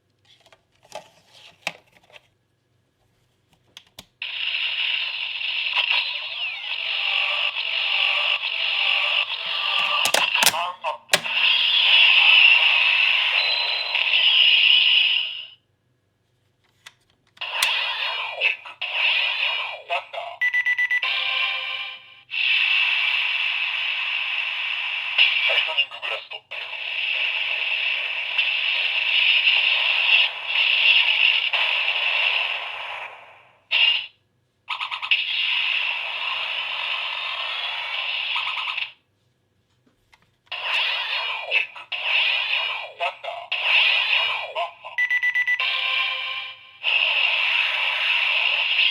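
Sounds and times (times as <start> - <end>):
toy belt electronic effects: 4.2 - 15.6, 40.5 - 48.9
fast pulsing beep: 13.3 - 14.1.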